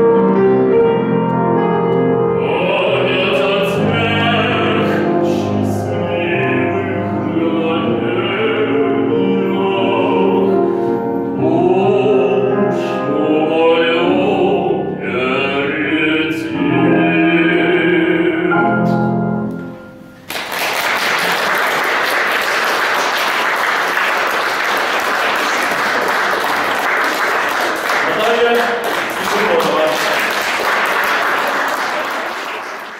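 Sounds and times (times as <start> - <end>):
piano accompaniment: 0.0 - 32.9
man singing: 2.3 - 19.1
audience applauding: 20.2 - 32.9.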